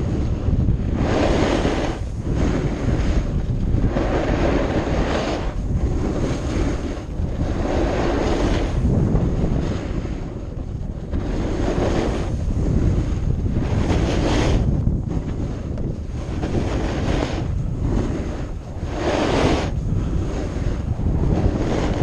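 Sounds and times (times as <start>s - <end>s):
strong wind buffeting microphone: 0.0s - 22.0s.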